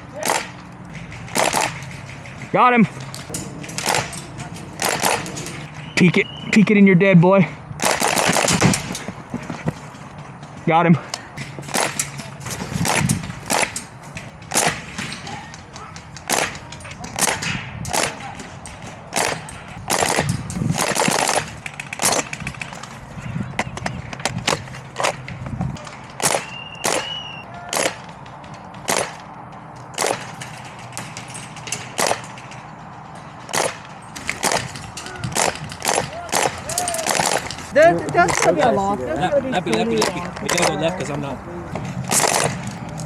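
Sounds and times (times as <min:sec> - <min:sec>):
airsoft guns firing: 0:00.2 - 0:05.7, 0:07.8 - 0:09.1, 0:11.4 - 0:23.0, 0:25.8 - 0:29.3, 0:29.9 - 0:32.6, 0:33.4 - 0:38.6, 0:42.1 - 0:42.8.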